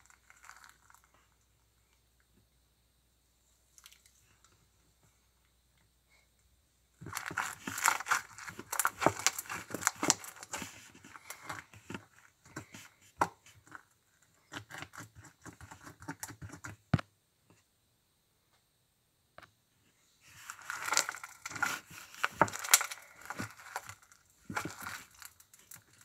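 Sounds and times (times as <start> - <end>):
slime crackling and popping: 0.0 - 1.2, 7.0 - 11.7, 20.5 - 26.0.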